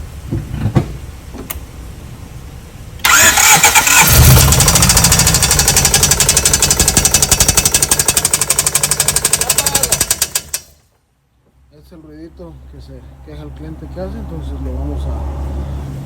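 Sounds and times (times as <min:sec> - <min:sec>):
engine starter cranking: 0:03.0 - 0:10.8
engine running with rapid knock: 0:03.1 - 0:10.7.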